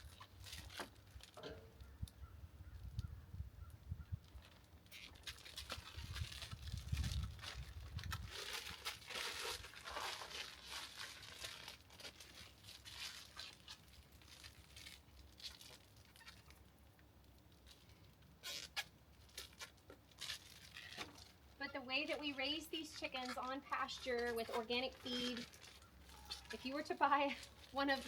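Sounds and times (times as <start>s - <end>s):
plastic bags crinkling: 0.0s - 2.0s, 4.2s - 28.0s.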